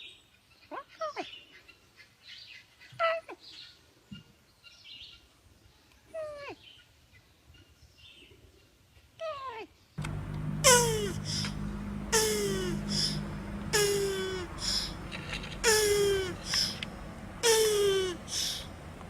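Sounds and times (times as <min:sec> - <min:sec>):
animal squealing call: 0:10.6 - 0:11.5, 0:12.1 - 0:15.0, 0:15.6 - 0:16.8, 0:17.4 - 0:18.7.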